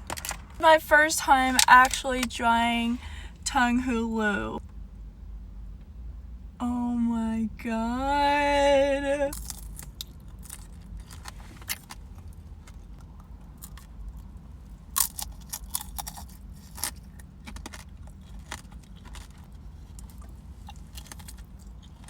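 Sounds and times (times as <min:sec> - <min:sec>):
candy shell cracking and crunching: 0:09.3 - 0:11.9, 0:14.9 - 0:22.0.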